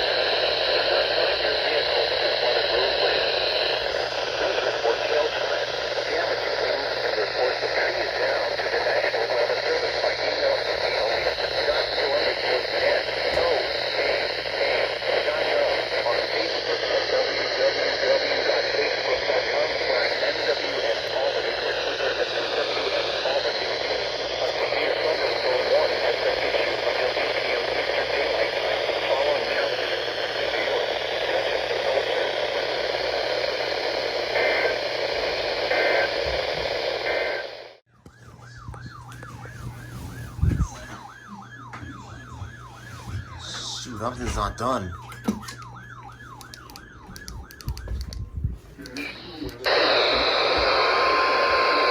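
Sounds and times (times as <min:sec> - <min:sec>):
radio static and hiss: 0:00.0 - 0:51.9
steady low hum: 0:00.0 - 0:51.9
siren rising and falling: 0:29.8 - 0:48.5, 0:49.2 - 0:51.9.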